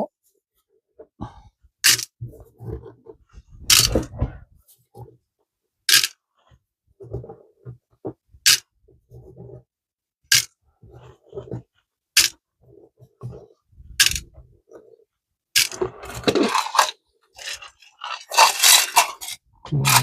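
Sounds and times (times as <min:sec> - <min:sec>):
loose screws rattling and scraping: 0:01.8 - 0:04.2, 0:05.9 - 0:06.2, 0:12.2 - 0:15.0, 0:15.6 - 0:20.0
metal screws clinking into container: 0:15.6 - 0:20.0.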